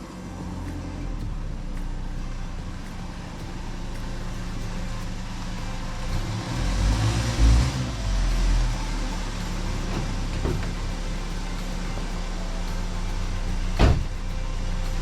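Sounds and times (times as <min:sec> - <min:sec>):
vehicle engine humming: 0:00.0 - 0:15.0
heavy low thump: 0:13.8 - 0:14.2.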